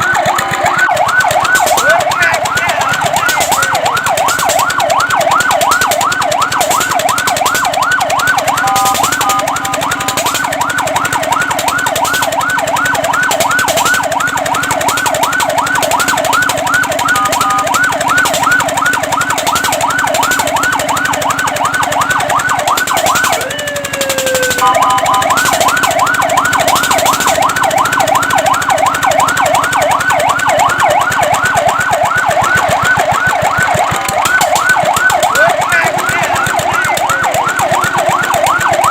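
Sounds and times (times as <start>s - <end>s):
fire truck siren yelping: 0.0s - 38.9s.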